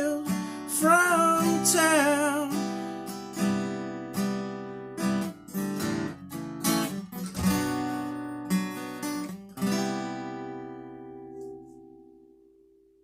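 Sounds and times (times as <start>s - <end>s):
acoustic guitar strumming: 0.0s - 12.8s.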